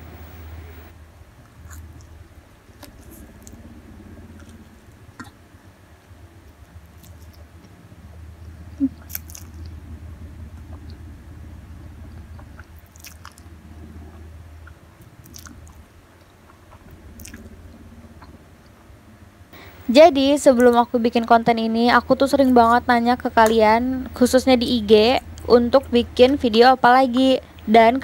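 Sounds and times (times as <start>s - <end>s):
steady low hum: 0.0s - 28.0s
wet mouth clicks: 8.8s - 9.6s, 12.4s - 13.4s, 14.6s - 15.8s
person chewing noodles: 8.8s - 9.7s, 12.4s - 13.5s, 14.6s - 17.5s.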